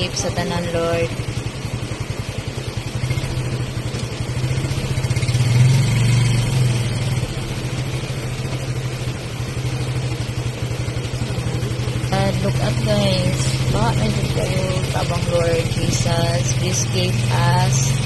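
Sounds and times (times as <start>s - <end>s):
vehicle engine running at low revs: 0.0s - 18.0s.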